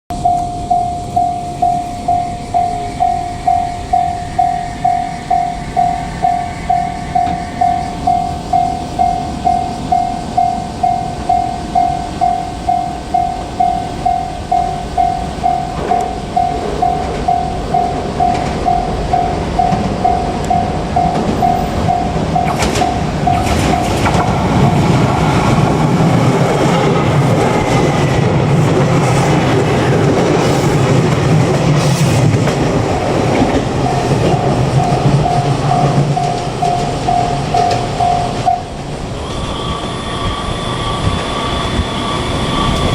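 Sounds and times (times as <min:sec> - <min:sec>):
level crossing bell ding: 0:00.1 - 0:24.2, 0:33.8 - 0:38.6
train rumble and wheel clatter: 0:00.1 - 0:42.9.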